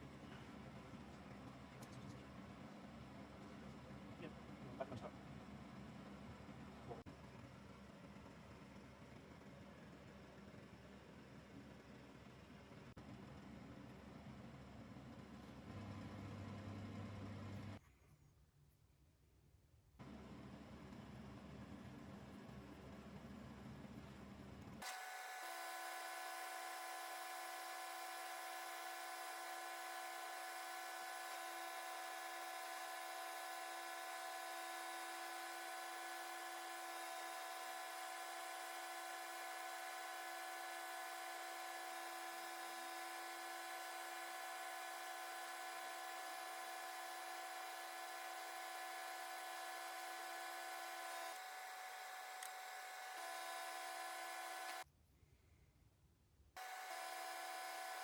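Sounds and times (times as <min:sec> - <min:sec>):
extractor fan hum: 0:20.0 - 0:54.8, 0:56.6 - 0:58.0.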